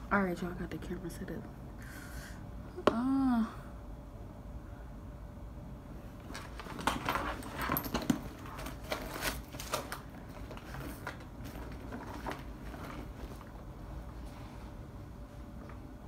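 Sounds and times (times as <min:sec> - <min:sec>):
objects clicking and rustling: 0:06.2 - 0:13.5.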